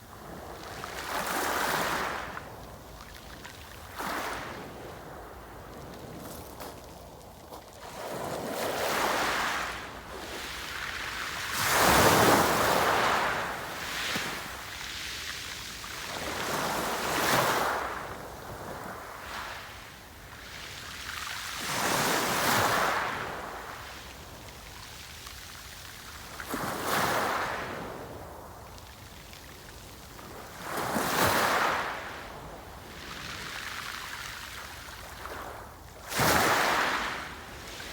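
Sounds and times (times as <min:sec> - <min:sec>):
sea waves breaking on shore: 0:07.8 - 0:19.6.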